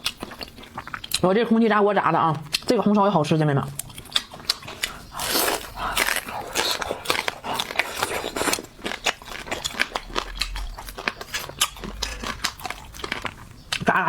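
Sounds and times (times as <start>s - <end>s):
crunchy chewing: 0.0s - 1.3s, 3.6s - 14.0s
wet mouth clicks: 3.8s - 13.8s.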